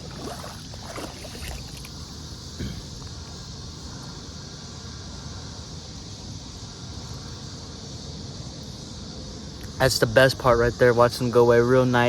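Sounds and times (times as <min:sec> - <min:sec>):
river water sloshing and splashing: 0:00.0 - 0:02.8.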